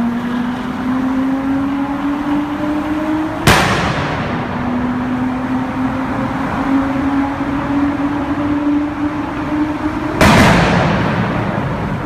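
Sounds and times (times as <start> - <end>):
car engine exhaust note: 0.0 - 12.0
exhaust backfire bang: 3.4 - 4.8, 10.2 - 12.0.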